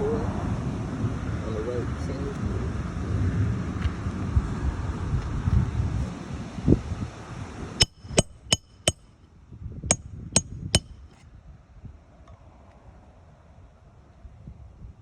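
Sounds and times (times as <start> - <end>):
hammer striking ringing metal: 7.8 - 9.1, 9.9 - 11.0.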